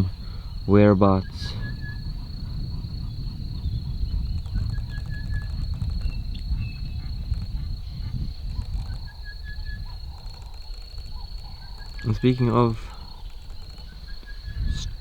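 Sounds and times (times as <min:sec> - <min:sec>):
low rumble: 0:00.0 - 0:09.0
bird trilling call: 0:07.8 - 0:15.0.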